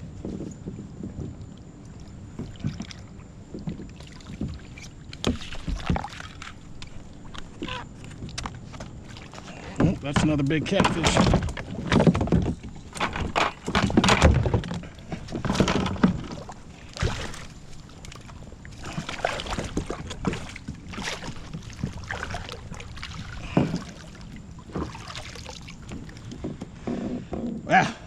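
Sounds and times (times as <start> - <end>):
water splashing: 1.4 - 26.6
knocks and thuds: 9.7 - 16.4.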